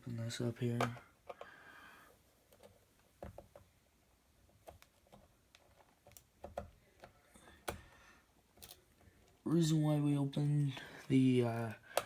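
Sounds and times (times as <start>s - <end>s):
clicks and taps on plastic panel: 0.7s - 1.5s, 4.6s - 8.0s.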